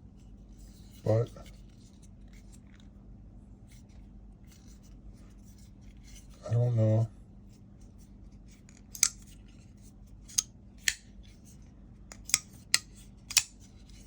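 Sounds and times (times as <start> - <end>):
folding knife clicking: 12.1 - 13.5.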